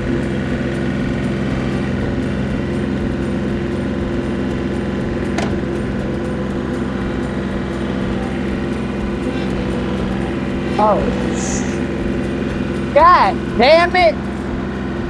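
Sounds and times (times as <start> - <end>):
tractor engine running: 0.0 - 15.0.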